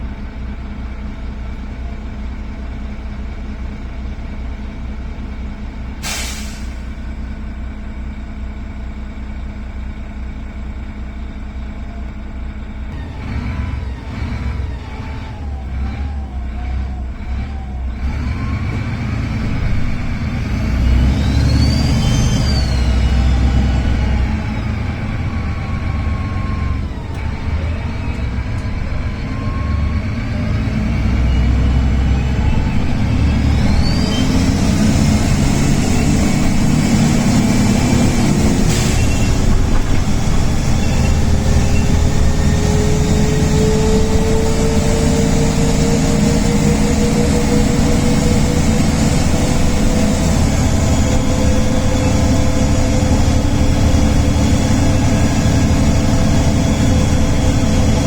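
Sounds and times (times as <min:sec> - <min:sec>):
diesel bus engine under load: 0:00.0 - 0:58.0
turbocharger whistle: 0:21.1 - 0:24.4, 0:32.6 - 0:36.6.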